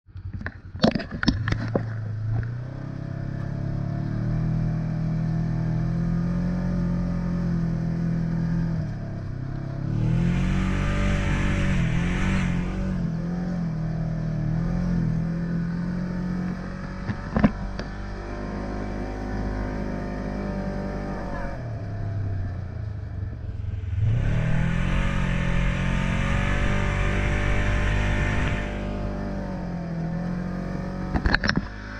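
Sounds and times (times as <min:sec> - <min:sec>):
atv engine running: 0:01.3 - 0:31.9
hissing rush: 0:23.3 - 0:29.2.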